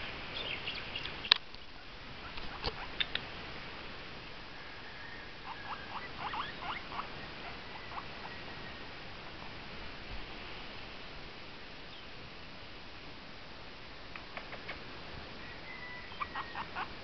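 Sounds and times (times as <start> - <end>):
guinea pig squeaking: 5.5 - 7.1.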